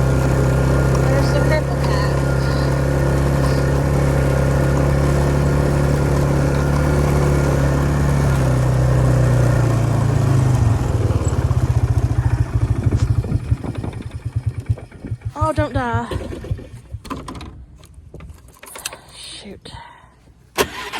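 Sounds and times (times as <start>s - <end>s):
tractor engine idling unevenly: 0.0s - 17.9s, 20.2s - 20.9s.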